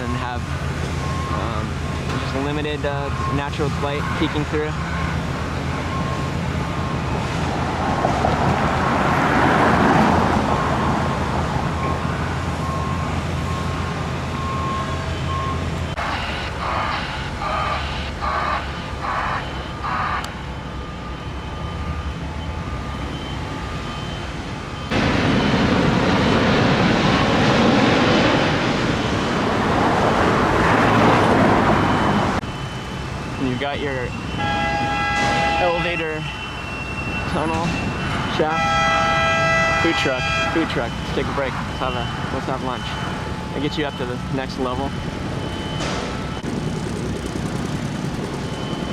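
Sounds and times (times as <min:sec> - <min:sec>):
road traffic noise: 0:00.0 - 0:48.9
low engine hum: 0:44.9 - 0:48.9
pulsing sound: 0:45.5 - 0:48.9.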